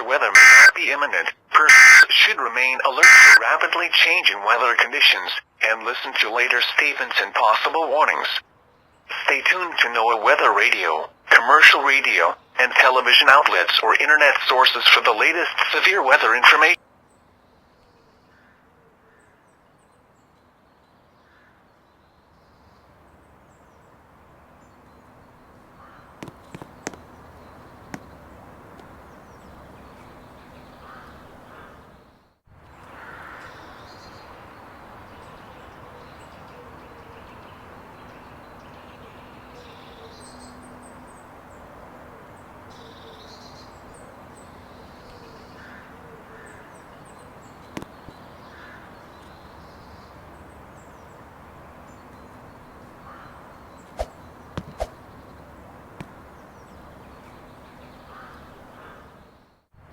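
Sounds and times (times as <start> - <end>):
birds calling: 0.0 - 2.2, 2.8 - 3.6, 24.4 - 59.7
outdoor ambience: 0.0 - 59.9.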